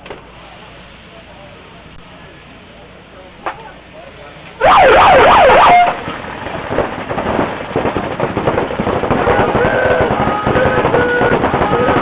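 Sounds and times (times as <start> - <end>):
electronic siren wailing: 4.6 - 6.0.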